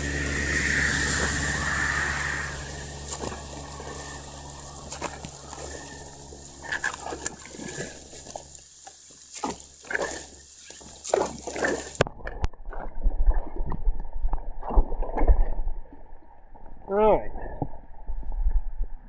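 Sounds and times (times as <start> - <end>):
storm drain gurgling: 0.0 - 12.4.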